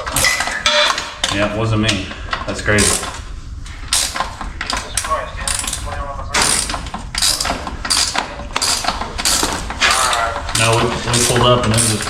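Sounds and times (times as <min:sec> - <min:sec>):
socket ratchet clicking: 0:05.5 - 0:12.0.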